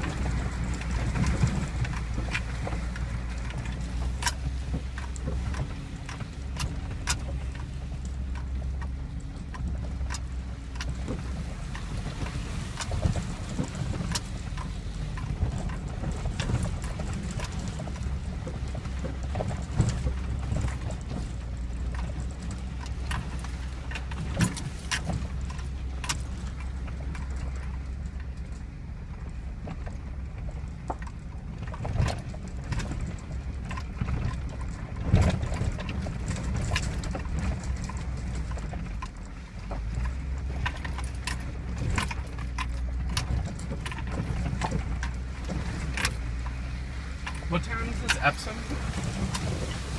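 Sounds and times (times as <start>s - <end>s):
truck engine running low: 0.0s - 49.9s
knocks and rattles: 29.2s - 49.9s.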